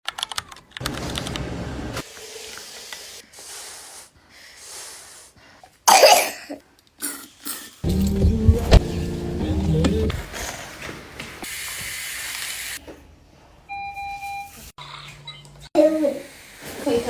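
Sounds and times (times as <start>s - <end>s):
faint breathy hissing: 3.2s - 5.7s
baby coughing: 5.9s - 7.2s.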